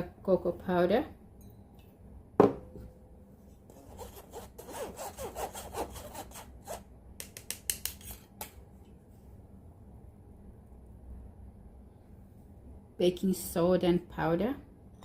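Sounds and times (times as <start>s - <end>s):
spoon scraping a bowl: 7.8s - 8.4s.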